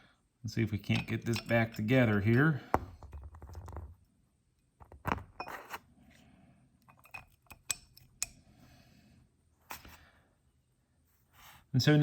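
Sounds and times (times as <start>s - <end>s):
small metal parts clinking: 0.9s - 2.6s.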